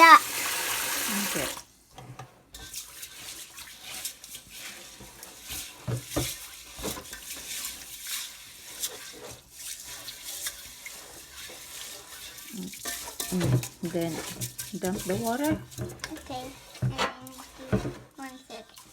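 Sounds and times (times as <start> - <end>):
water sloshing in a pot: 0.0 - 18.9.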